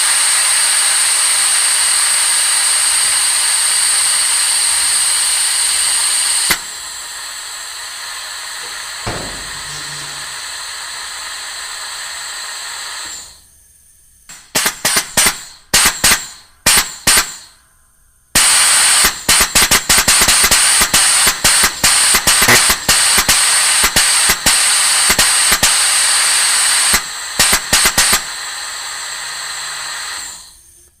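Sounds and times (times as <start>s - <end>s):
air hissing: 6.0s - 13.4s, 20.1s - 30.7s
rapid air blasts: 8.8s - 10.9s.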